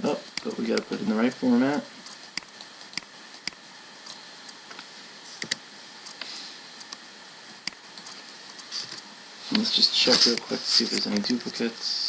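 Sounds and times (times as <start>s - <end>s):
faint steady hiss: 0.0s - 12.0s
keyboard and mouse clicks: 5.4s - 7.0s, 10.3s - 11.5s.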